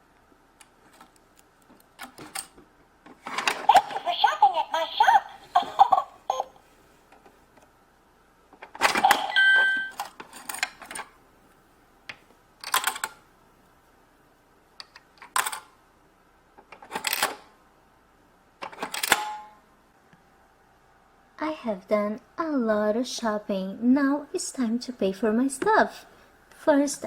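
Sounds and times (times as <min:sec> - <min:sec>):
electronic beep tones: 0:09.2 - 0:10.0.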